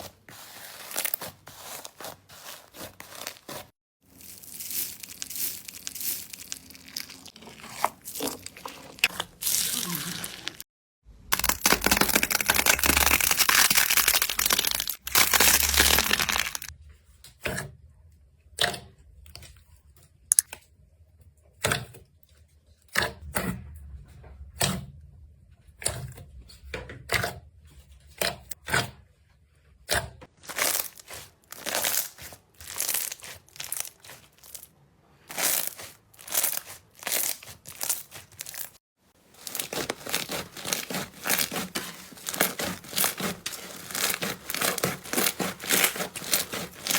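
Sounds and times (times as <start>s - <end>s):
slime crackling and squishing: 0.0s - 16.7s, 30.3s - 46.9s.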